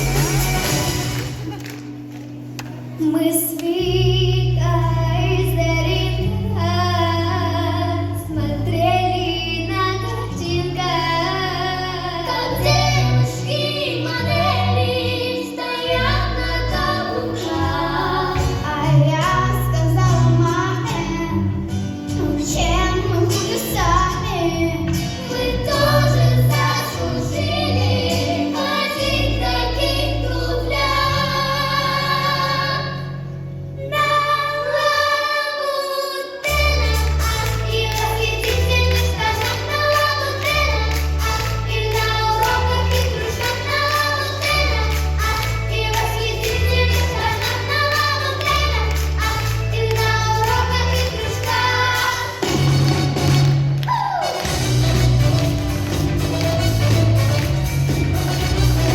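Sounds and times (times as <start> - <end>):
children singing: 10.0 - 18.6, 22.5 - 33.1, 33.8 - 53.1
backing track with bass notes: 36.5 - 58.9.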